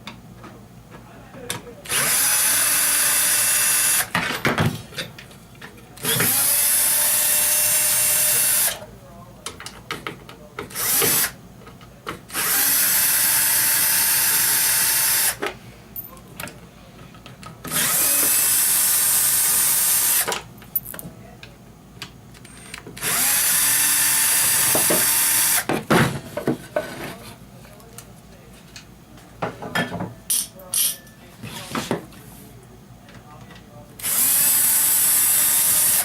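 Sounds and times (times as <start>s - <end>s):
electric drill-driver running: 1.9s - 4.1s, 6.0s - 8.8s, 10.8s - 11.3s, 12.4s - 15.4s, 17.7s - 20.3s, 23.0s - 25.7s, 34.0s - 36.0s.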